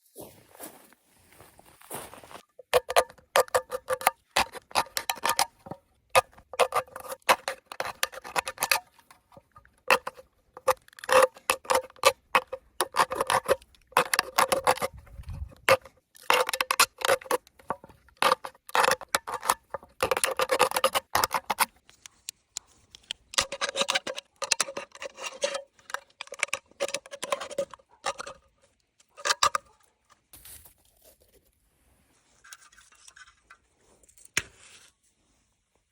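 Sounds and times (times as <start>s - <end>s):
tool clicking on tin can: 2.6s - 21.7s, 23.3s - 28.4s, 29.1s - 29.7s.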